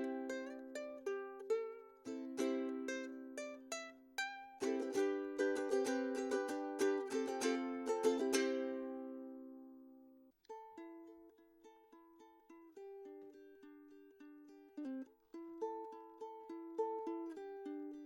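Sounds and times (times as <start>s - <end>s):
ukulele notes picked: 0.0s - 9.9s
ukulele strummed chords: 0.0s - 18.0s.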